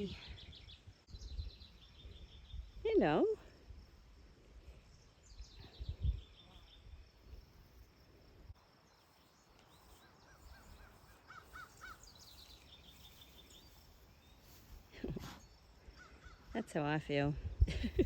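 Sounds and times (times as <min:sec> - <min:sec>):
distant bird calls: 0:08.8 - 0:16.7
thin high bird chirps: 0:09.0 - 0:15.6.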